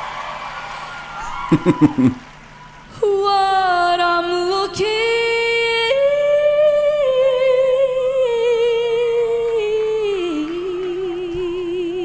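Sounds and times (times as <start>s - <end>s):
woman singing a high note: 2.9s - 12.0s.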